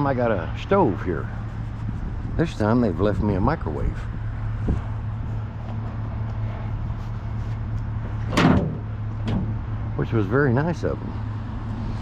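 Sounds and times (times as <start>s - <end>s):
truck door bang: 8.3s - 9.6s.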